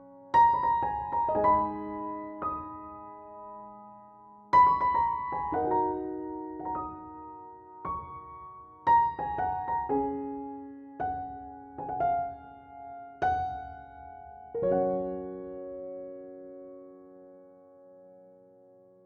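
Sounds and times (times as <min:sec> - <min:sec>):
gentle piano melody: 0:00.0 - 0:19.0.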